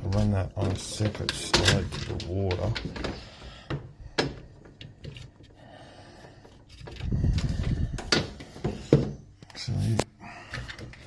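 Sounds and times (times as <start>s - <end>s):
handling clicks and knocks: 0.0s - 5.6s.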